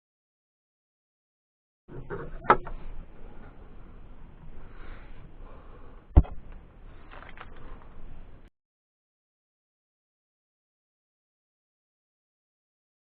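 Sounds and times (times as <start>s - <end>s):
low handling rustle: 1.9s - 8.5s
sharp knocks: 6.1s - 6.5s.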